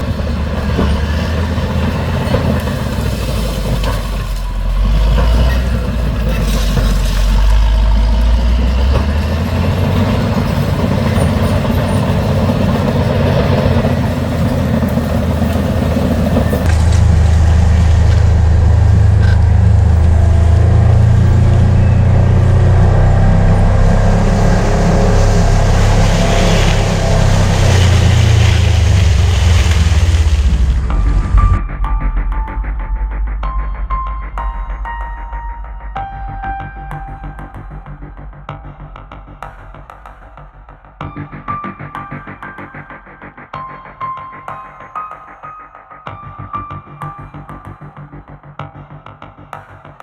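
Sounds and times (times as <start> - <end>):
bulldozer diesel engine running: 0.0 - 33.2.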